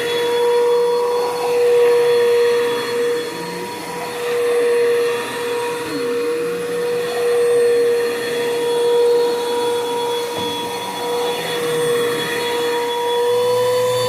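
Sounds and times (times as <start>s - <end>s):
vacuum cleaner motor whine: 0.0s - 14.0s.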